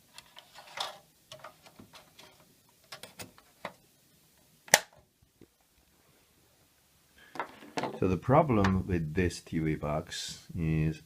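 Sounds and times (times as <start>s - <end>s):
plastic snapping: 4.7s - 5.0s.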